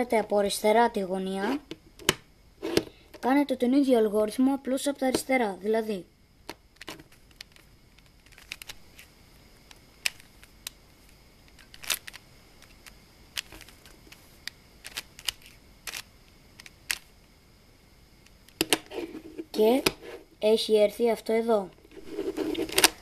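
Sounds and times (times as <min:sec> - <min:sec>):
plastic puzzle cube clicks: 0:06.5 - 0:09.1, 0:14.8 - 0:17.1.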